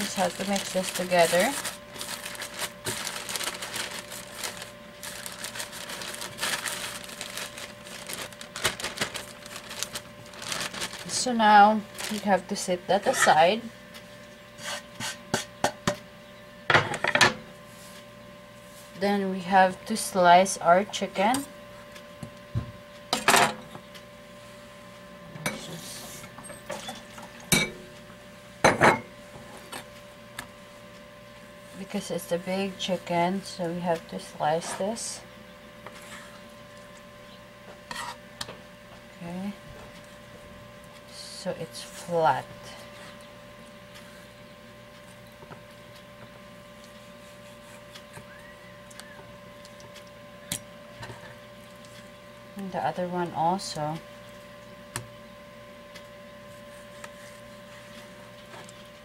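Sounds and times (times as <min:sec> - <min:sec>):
dry mix stirred in a bowl: 0:00.0 - 0:13.6
faint steady hum: 0:00.0 - 0:59.0.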